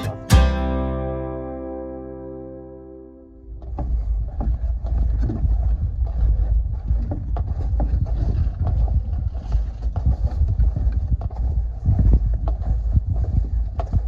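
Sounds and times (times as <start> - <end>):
microphone handling noise: 3.4 - 14.0
wind rumble on microphone: 3.4 - 14.0.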